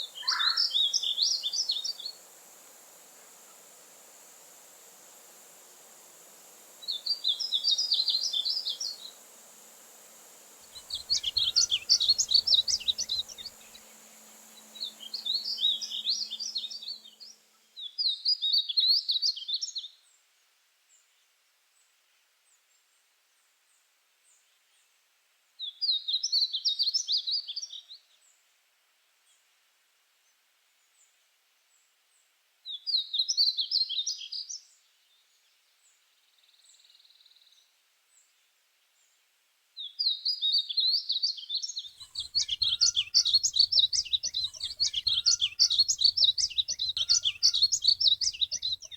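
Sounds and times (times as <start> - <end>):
bird singing warbled phrases: 0.0 - 2.2, 6.8 - 17.4, 42.0 - 48.9
steady hiss: 0.0 - 17.9, 41.8 - 48.9.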